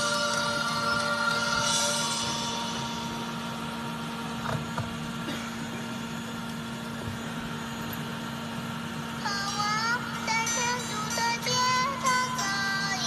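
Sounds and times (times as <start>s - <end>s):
background music: 0.0s - 4.2s
hot air station blowing rush: 0.0s - 9.2s.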